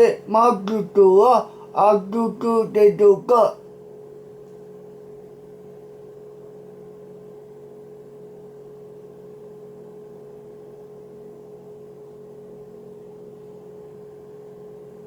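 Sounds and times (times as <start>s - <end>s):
electrical hum: 0.0s - 3.7s.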